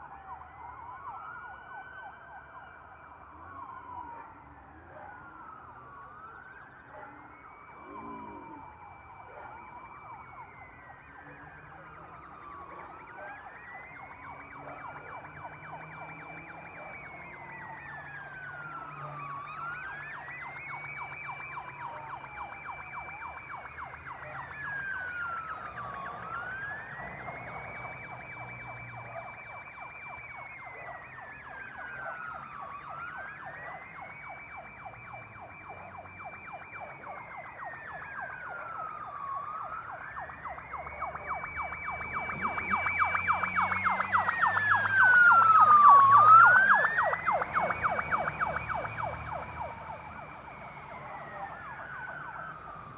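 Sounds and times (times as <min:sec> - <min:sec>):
emergency siren wailing: 0:00.0 - 0:52.9
vehicle engine: 0:13.8 - 0:20.0, 0:38.3 - 0:51.0.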